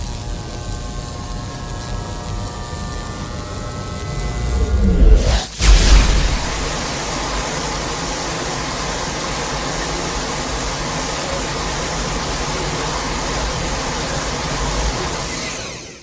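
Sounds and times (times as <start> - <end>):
deep rumble: 3.9 - 7.0
dense rushing noise: 4.0 - 7.5.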